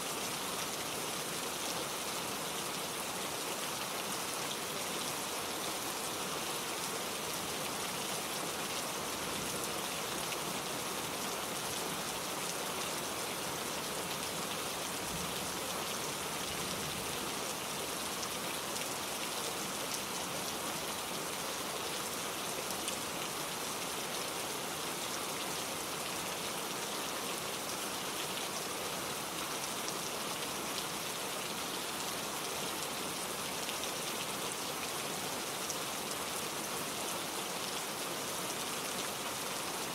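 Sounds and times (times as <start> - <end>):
rain falling on foliage: 0.0 - 39.9.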